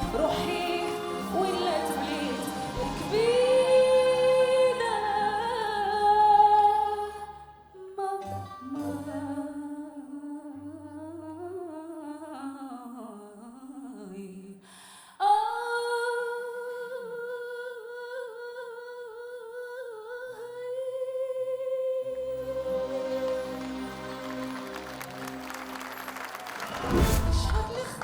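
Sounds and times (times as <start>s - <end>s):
person singing without words: 0.0s - 7.2s, 27.2s - 28.0s.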